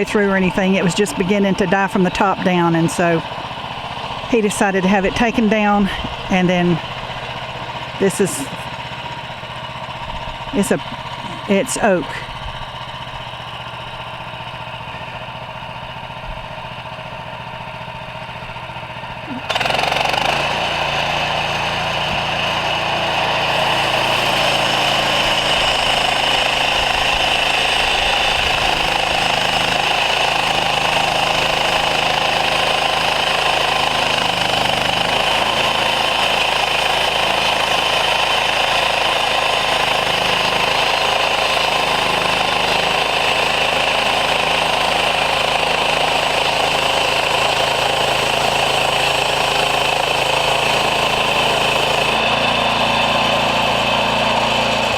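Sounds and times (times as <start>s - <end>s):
band sawmill cutting log: 0.0s - 54.9s
gas engine running: 0.0s - 54.9s.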